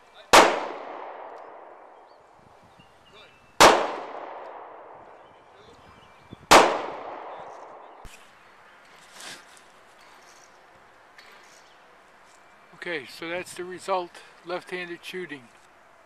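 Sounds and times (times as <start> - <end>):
handgun shots echoing: 0.3 - 2.0, 3.6 - 5.1, 6.5 - 8.2.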